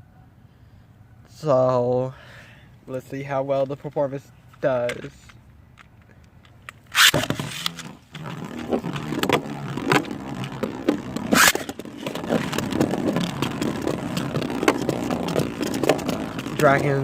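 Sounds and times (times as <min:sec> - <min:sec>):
spinning top launcher rip: 0:06.8 - 0:17.0
spinning tops whirring and scraping: 0:06.8 - 0:17.0
spinning tops clacking together: 0:10.8 - 0:11.8.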